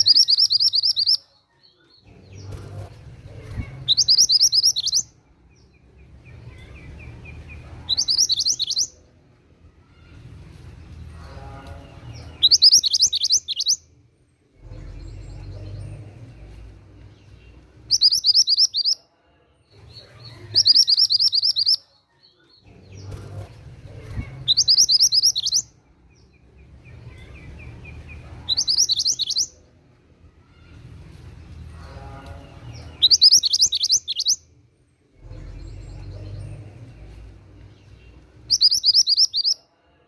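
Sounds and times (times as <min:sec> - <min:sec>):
bird twittering: 0:00.0 - 0:01.2, 0:12.4 - 0:13.8, 0:17.9 - 0:19.0, 0:20.5 - 0:21.8, 0:24.5 - 0:25.6, 0:33.0 - 0:34.4, 0:38.5 - 0:39.6.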